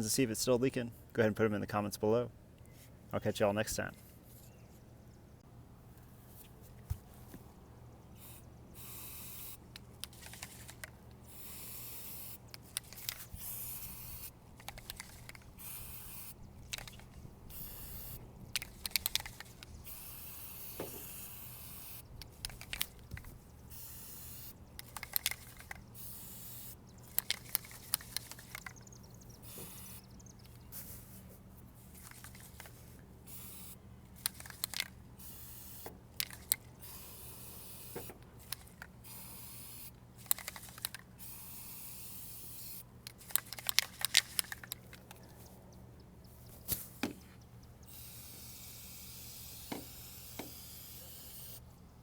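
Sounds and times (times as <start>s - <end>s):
aerosol spray hissing: 11.3s - 12.4s, 15.6s - 16.4s, 17.5s - 18.2s, 19.4s - 22.0s, 29.4s - 30.1s, 36.8s - 38.1s, 47.9s - 51.6s.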